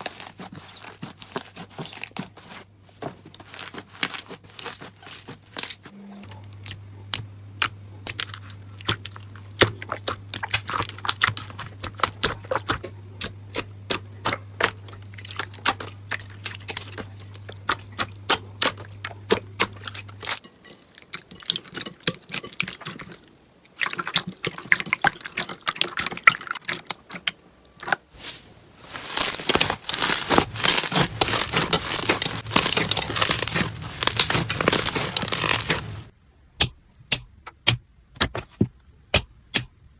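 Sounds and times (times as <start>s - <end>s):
low steady hum: 0.0s - 36.4s
crunchy slime crackling: 3.4s - 5.9s, 6.6s - 20.4s, 23.8s - 36.1s.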